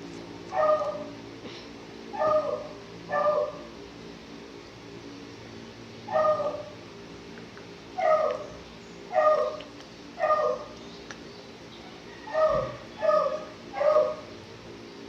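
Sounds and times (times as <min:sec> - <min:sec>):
faint low hum: 0:00.0 - 0:15.0
dog barking: 0:00.5 - 0:01.1, 0:02.2 - 0:03.7, 0:06.1 - 0:06.8, 0:08.0 - 0:08.5, 0:09.1 - 0:10.7, 0:12.3 - 0:14.2.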